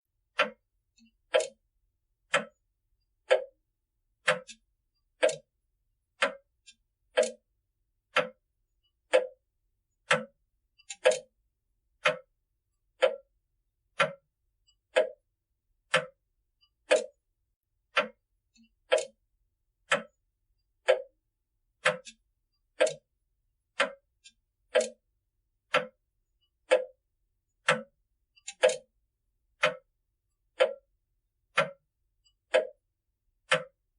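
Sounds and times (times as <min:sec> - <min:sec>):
clock ticking: 0:00.3 - 0:01.6, 0:02.2 - 0:02.6, 0:03.2 - 0:03.6, 0:04.2 - 0:05.5, 0:06.1 - 0:07.5, 0:08.1 - 0:09.4, 0:10.0 - 0:11.4, 0:12.0 - 0:12.3, 0:12.9 - 0:13.3, 0:13.9 - 0:17.2, 0:17.9 - 0:19.2, 0:19.8 - 0:20.2, 0:20.8 - 0:21.2, 0:21.8 - 0:23.1, 0:23.7 - 0:25.0, 0:25.6 - 0:29.0, 0:29.6 - 0:29.9, 0:30.5 - 0:32.8, 0:33.4 - 0:33.9.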